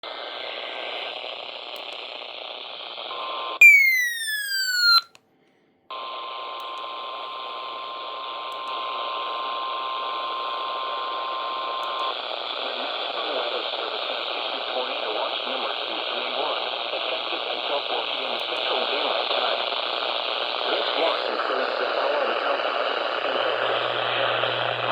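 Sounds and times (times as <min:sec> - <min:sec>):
loud falling sweep: 0:03.6 - 0:05.0
steady alert tone: 0:03.6 - 0:05.1
radio hiss: 0:12.1 - 0:24.7.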